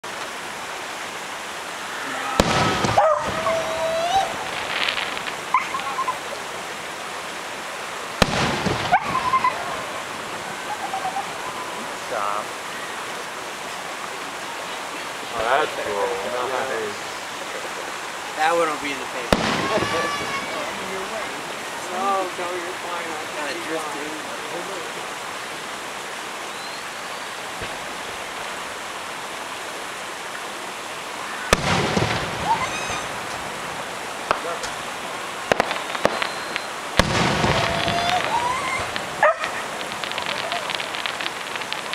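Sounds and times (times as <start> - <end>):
firework crackles: 0.0 - 30.4, 31.0 - 41.9
background hiss: 0.0 - 41.9
firework bang: 2.4 - 3.6, 8.2 - 9.6, 19.3 - 20.6, 31.5 - 33.1, 35.5 - 41.9.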